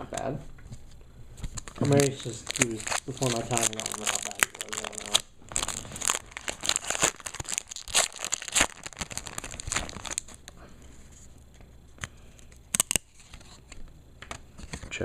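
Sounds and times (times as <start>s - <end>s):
foil wrapper crinkling: 1.6s - 10.5s, 12.7s - 13.2s.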